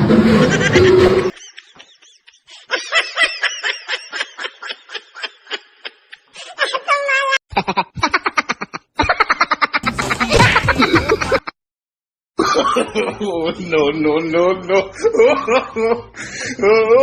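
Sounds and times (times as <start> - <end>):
person laughing in high snickers: 7.5 - 11.5.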